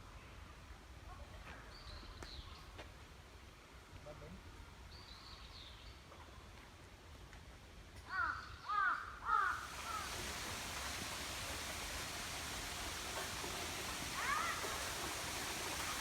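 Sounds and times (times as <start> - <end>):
crow cawing: 8.1 - 10.0
steady rushing hiss: 9.2 - 16.0.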